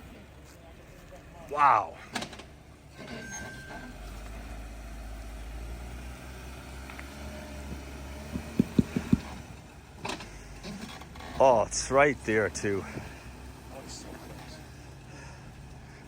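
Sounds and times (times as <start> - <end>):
vehicle engine running low: 0.0 - 16.0
sharp knocks: 7.6 - 9.4.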